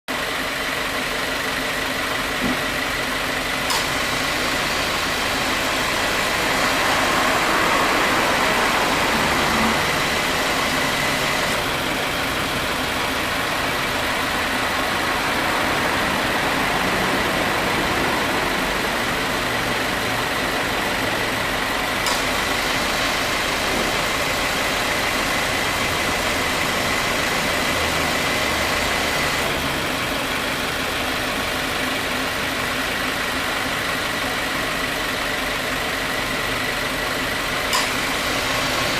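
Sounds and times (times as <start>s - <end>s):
car engine idling: 0.1s - 38.9s
compressor clutch clicking: 3.7s - 5.0s, 22.0s - 22.5s, 37.7s - 38.2s.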